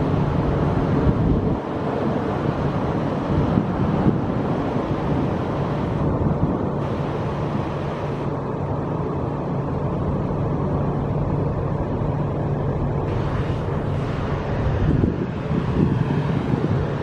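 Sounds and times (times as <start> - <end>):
wind on microphone: 0.0 - 9.4, 12.9 - 17.0
diesel train engine hum: 0.0 - 17.0.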